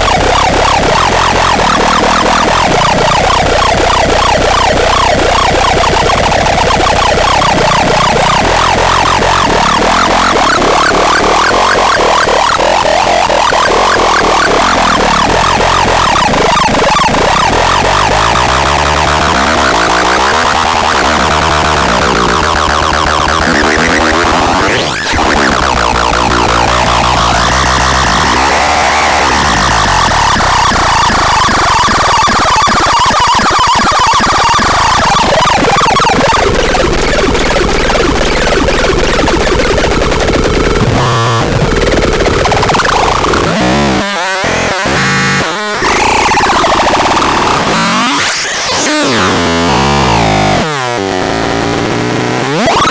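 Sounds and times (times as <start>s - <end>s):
harsh electronic noise music: 0.0s - 52.9s.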